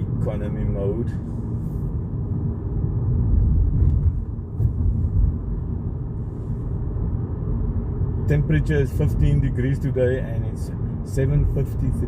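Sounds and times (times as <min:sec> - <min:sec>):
car engine rumbling: 0:00.0 - 0:12.0
tyres on the road: 0:00.0 - 0:12.0.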